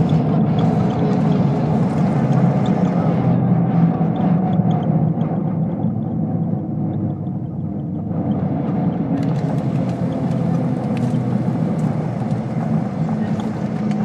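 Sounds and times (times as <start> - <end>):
jet engines rumbling: 0.0 - 14.0.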